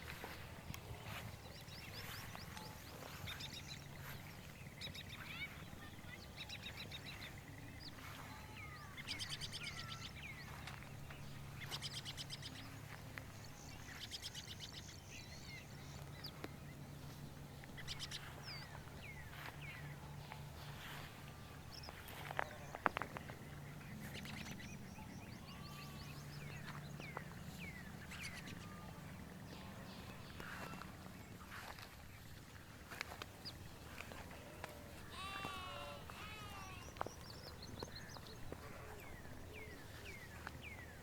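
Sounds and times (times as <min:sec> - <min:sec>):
small birds chirping: 0:00.0 - 0:41.0
steady low hum: 0:00.0 - 0:41.0.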